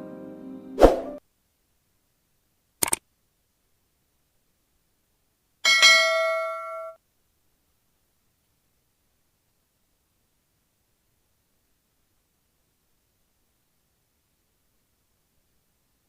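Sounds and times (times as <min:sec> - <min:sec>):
sharp double click: 0:02.8 - 0:03.0
metallic clang ringing: 0:05.7 - 0:07.0.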